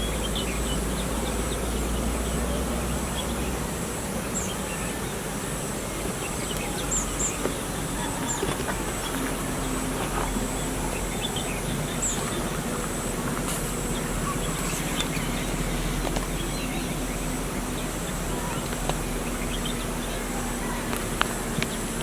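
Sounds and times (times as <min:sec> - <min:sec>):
background hiss: 0:00.0 - 0:22.0
birds chirping: 0:00.0 - 0:22.0.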